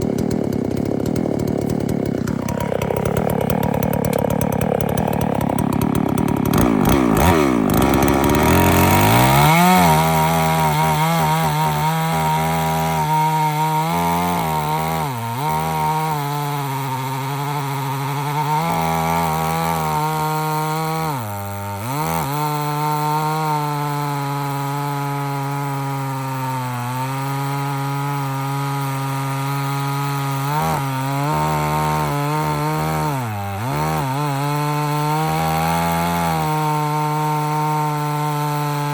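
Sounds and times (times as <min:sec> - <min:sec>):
chainsaw ripping a board: 0:00.0 - 0:38.9.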